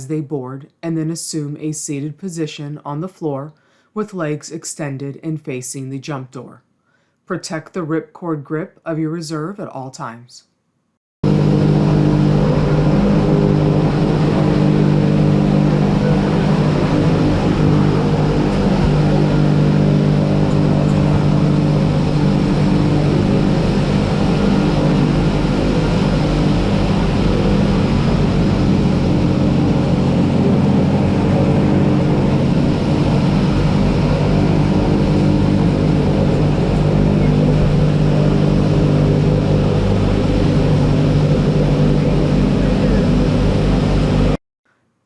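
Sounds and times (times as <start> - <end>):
turboprop engines droning: 11.2 - 44.4.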